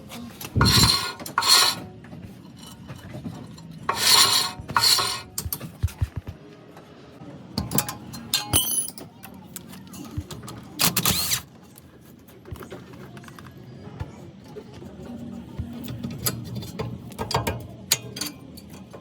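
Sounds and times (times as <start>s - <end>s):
rasping scraping strokes: 0.6s - 1.9s, 3.8s - 5.4s.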